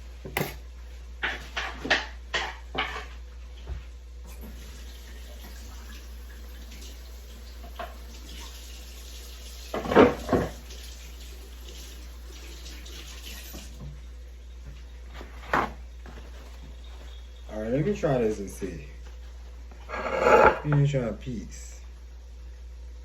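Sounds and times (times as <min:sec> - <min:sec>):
tap water running into sink: 0:04.3 - 0:14.9.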